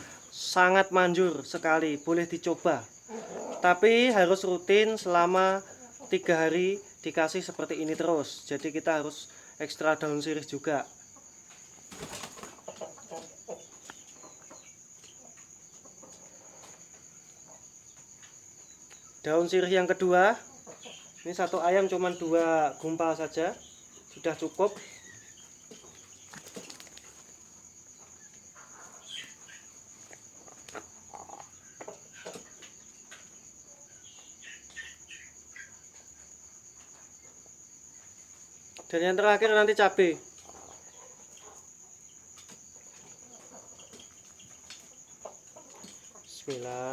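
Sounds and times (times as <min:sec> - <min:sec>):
chicken clucking: 0:00.0 - 0:09.2, 0:09.9 - 0:46.9
crickets chirping: 0:00.0 - 0:46.9
faint clicks and rustles: 0:25.7 - 0:27.4.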